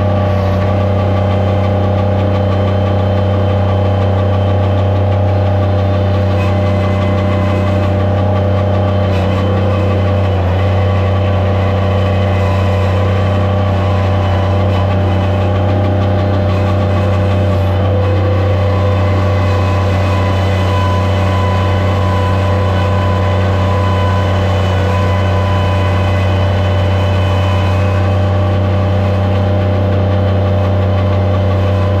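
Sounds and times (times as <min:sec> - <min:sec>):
loader engine droning: 0:00.0 - 0:32.0.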